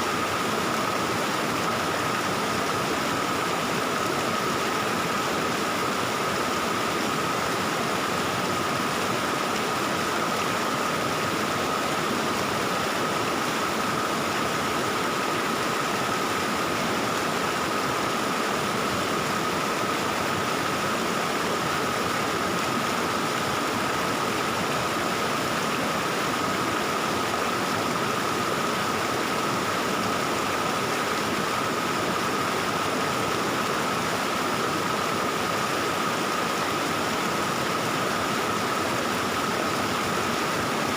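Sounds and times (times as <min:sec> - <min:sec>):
stream water babbling: 0:00.0 - 0:40.9.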